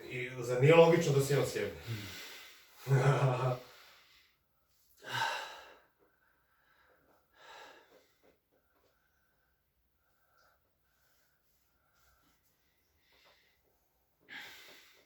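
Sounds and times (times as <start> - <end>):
sharp breaths: 1.8 - 2.8.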